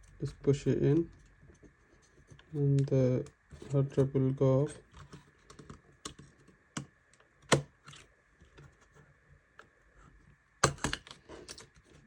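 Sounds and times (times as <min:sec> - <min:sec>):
laptop drive clicks and knocks: 0:05.0 - 0:07.7, 0:10.6 - 0:11.2.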